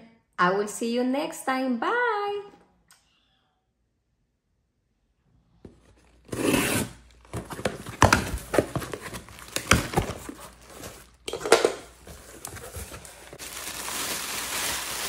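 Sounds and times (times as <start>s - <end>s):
packaging crinkling: 7.1s - 11.3s, 11.9s - 15.0s
packaging tearing: 12.2s - 15.0s.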